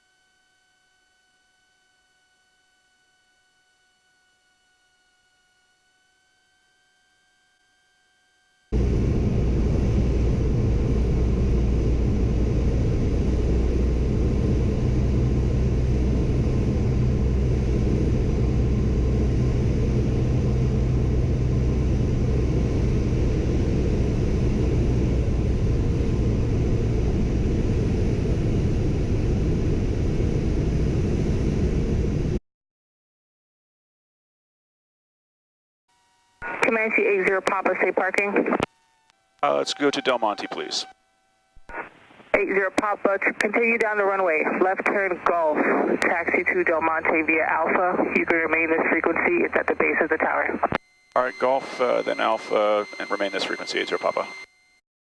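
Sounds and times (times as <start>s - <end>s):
airplane engine drone: 8.7s - 32.4s, 36.0s - 40.9s, 41.7s - 54.5s
airflow noise: 44.5s - 50.5s.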